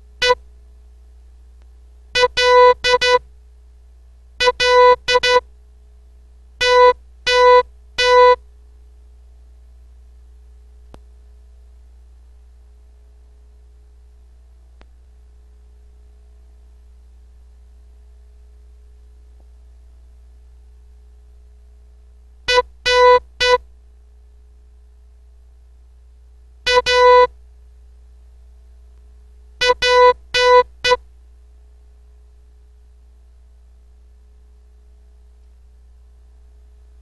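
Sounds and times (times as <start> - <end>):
morse code beeps: 2.2 - 3.2, 4.4 - 5.4, 6.6 - 8.4, 22.5 - 23.6, 26.7 - 27.3, 29.6 - 31.0.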